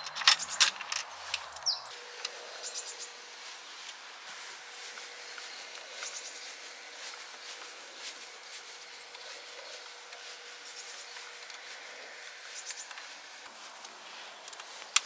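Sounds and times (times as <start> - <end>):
handlebar rubbing in clamp: 0.0 - 1.8
light clicks of bolts: 0.0 - 2.4.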